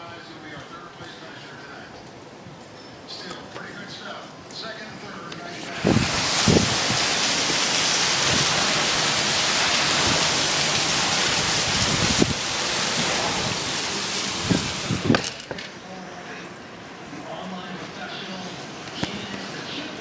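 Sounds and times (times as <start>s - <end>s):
heavy rain pouring: 5.6s - 15.6s.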